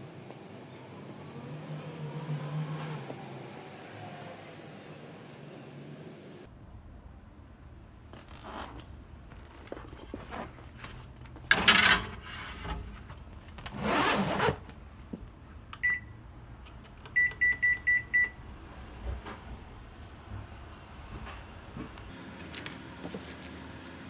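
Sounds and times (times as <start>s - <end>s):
oven control panel beeps: 15.8s - 16.2s, 17.2s - 18.4s
rustling handling noises: 22.4s - 24.0s.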